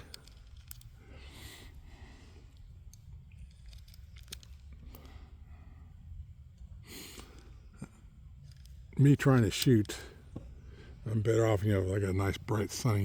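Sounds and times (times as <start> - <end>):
soft breath: 0.0 - 2.9, 4.8 - 8.1, 10.0 - 11.1.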